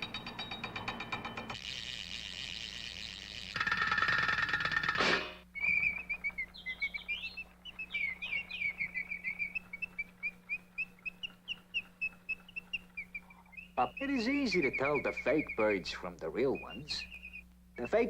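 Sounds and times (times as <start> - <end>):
high bird-like chirps: 5.5 - 18.0.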